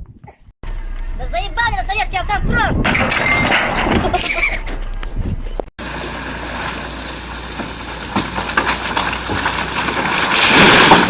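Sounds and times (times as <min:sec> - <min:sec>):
heavy machine engine running: 0:05.8 - 0:10.8.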